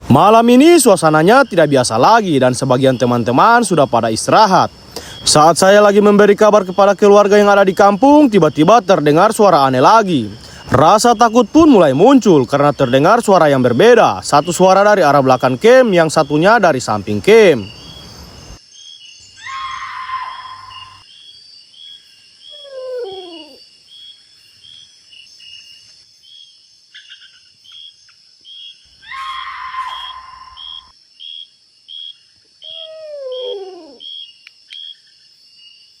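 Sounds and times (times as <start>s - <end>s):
crickets chirping: 0.0s - 36.0s
noisy animal call with tone: 19.4s - 21.1s, 22.4s - 23.6s, 29.0s - 34.9s
animal call sliding down in pitch: 29.1s - 30.8s.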